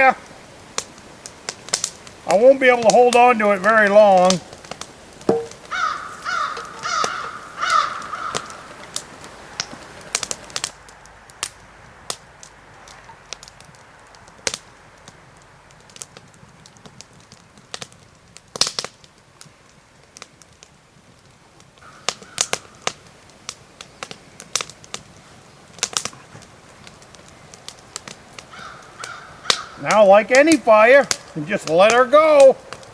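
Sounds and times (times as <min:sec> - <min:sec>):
fire crackling: 0:00.0 - 0:32.9
crow cawing: 0:05.6 - 0:08.8, 0:21.8 - 0:22.9, 0:28.5 - 0:29.8.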